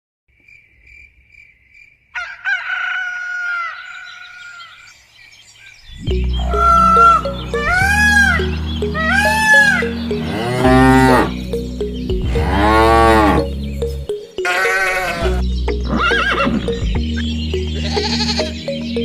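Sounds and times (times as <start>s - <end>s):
background music: 5.9s - 19.0s
cattle mooing: 6.4s - 11.5s, 12.3s - 13.5s, 14.4s - 16.8s, 17.8s - 18.6s.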